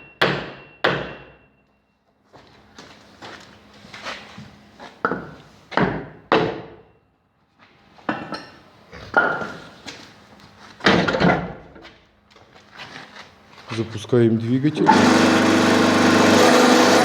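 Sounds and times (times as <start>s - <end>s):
heavy metallic knocks with ring: 0.0s - 1.6s.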